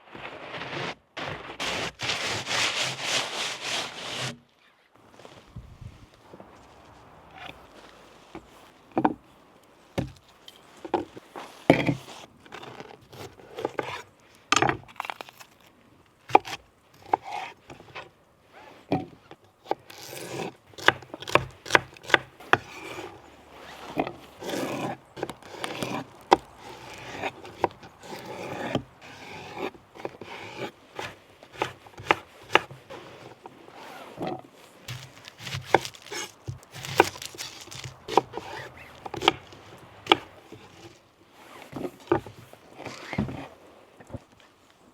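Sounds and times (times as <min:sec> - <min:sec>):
knife chopping on cutting board: 0:30.0 - 0:32.8, 0:34.9 - 0:39.4.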